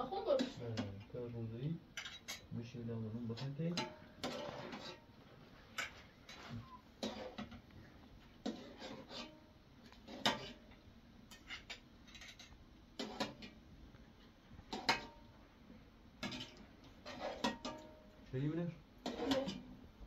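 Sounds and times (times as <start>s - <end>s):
dishes and cutlery clinking: 2.0s - 2.5s, 3.2s - 5.1s, 5.7s - 7.6s, 8.4s - 10.7s, 11.3s - 13.6s, 14.7s - 15.3s, 16.2s - 18.1s, 19.0s - 19.7s.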